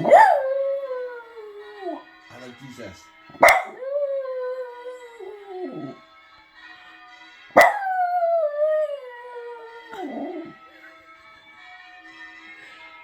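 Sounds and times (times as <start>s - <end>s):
dog howling: 0.0s - 2.1s, 3.4s - 6.0s, 7.6s - 10.6s.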